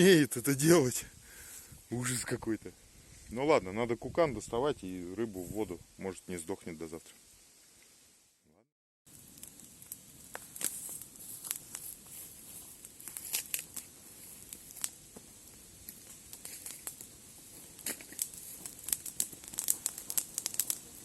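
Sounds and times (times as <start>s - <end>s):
sharp clicks and crackles: 9.3s - 21.0s
crinkling and rustling: 10.3s - 20.9s.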